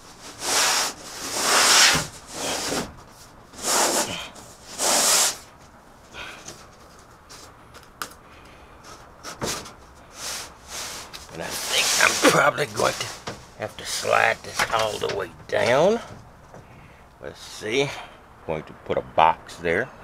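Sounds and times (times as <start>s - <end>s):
plywood scraping on floor: 0.0s - 5.5s, 8.9s - 15.7s.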